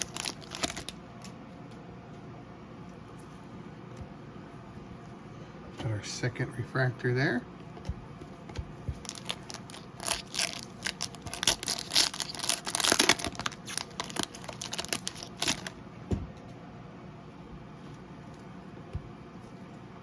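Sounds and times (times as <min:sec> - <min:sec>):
wrappers crinkling and tearing: 0:00.0 - 0:01.3, 0:09.0 - 0:15.8.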